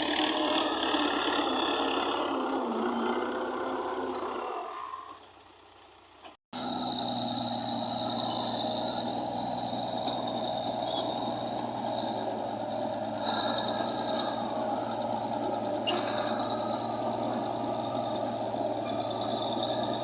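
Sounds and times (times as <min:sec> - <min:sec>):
heavy vehicle engine running: 0:00.0 - 0:20.0
high-pitched whine: 0:06.6 - 0:20.0.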